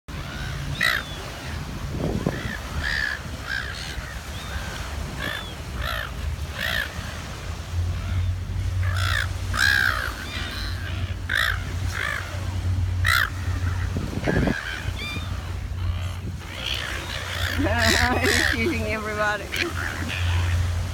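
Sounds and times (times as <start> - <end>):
seagulls squawking: 0.1 - 20.9
low steady hum: 5.0 - 20.9.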